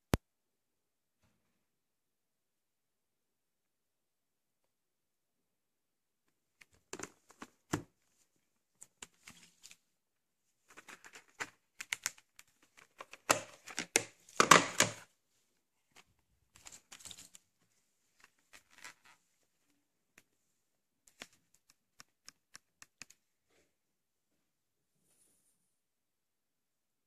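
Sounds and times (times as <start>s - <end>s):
plastic tape cases clicking: 10.7s - 15.0s.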